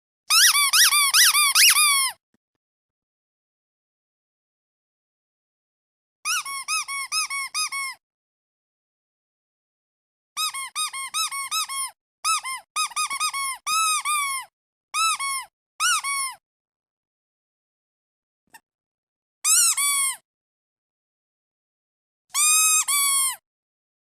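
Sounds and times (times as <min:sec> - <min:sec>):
squeaky duck toy squeaking: 0:00.3 - 0:02.2, 0:06.2 - 0:08.0, 0:10.4 - 0:16.4, 0:19.4 - 0:20.2, 0:22.3 - 0:23.4.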